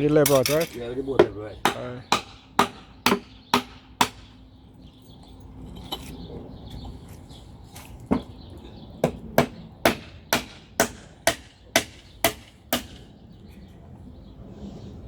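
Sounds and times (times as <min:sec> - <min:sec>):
hammer strikes: 0:00.2 - 0:04.3.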